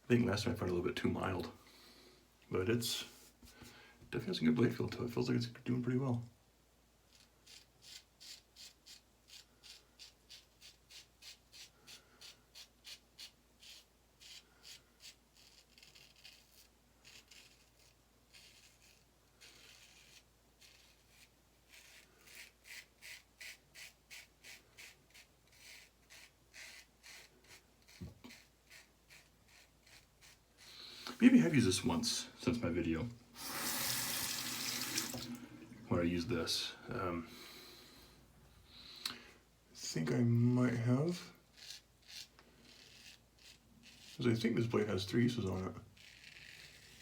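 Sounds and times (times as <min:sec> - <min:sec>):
razor scraping stubble: 0:07.1 - 0:32.8, 0:33.4 - 0:35.3, 0:39.8 - 0:47.0.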